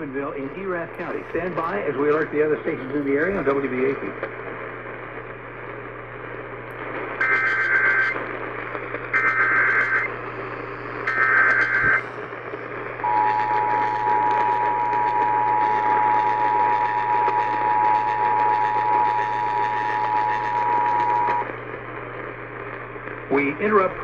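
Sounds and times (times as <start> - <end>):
radio hiss and hum: 0.0 - 24.0
data burst tones: 9.1 - 10.1, 11.0 - 12.2, 13.0 - 21.5.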